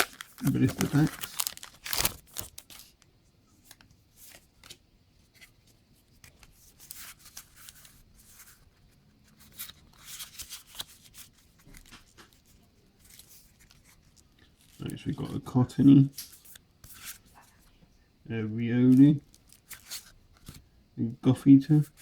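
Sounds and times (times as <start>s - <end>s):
foil wrapper rustling: 0.0s - 3.0s, 19.0s - 20.6s
trading cards being handled: 0.0s - 3.0s, 3.6s - 17.6s, 18.8s - 20.6s.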